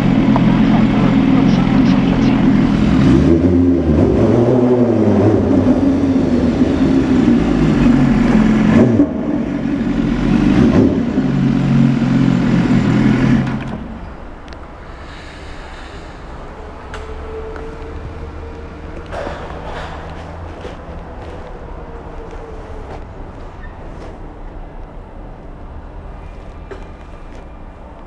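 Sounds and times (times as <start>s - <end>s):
motorcycle engine revving: 0.0s - 14.0s.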